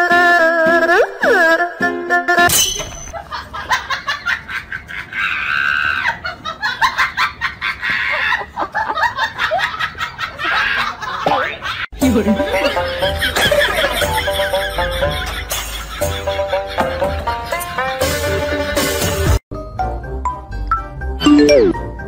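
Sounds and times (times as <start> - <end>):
people laughing: 3.1 - 19.3.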